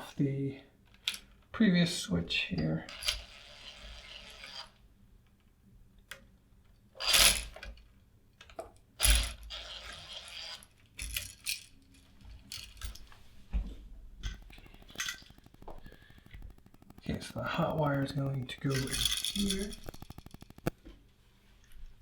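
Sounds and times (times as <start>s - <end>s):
metallic clicks and rattles: 14.2s - 20.7s.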